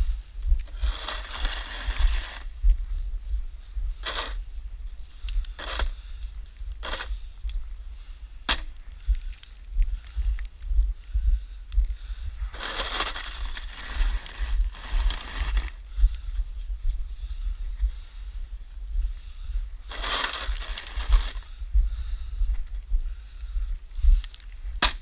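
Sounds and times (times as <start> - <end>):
wind rumble on microphone: 0.0 - 25.0
snow shovel scraping snow: 0.7 - 2.5, 4.0 - 4.4, 5.6 - 5.9, 12.5 - 15.8, 19.9 - 21.4.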